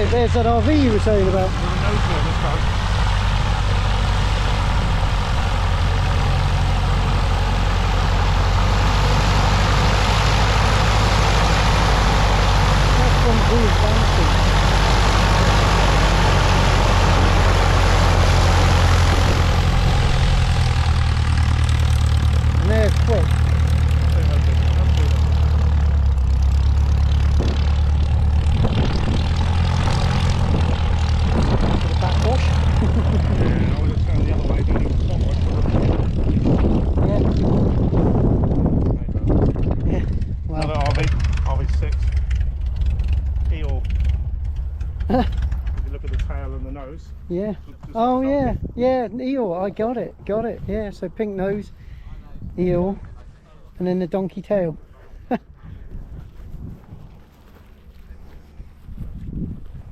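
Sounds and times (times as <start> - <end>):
light aircraft engine droning: 0.0 - 59.9.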